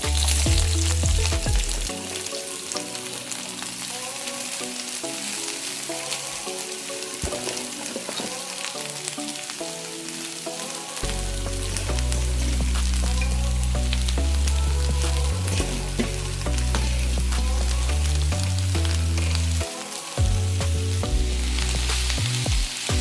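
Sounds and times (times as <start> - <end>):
background music: 0.0 - 23.0
vegetables sizzling in oil: 0.0 - 23.0.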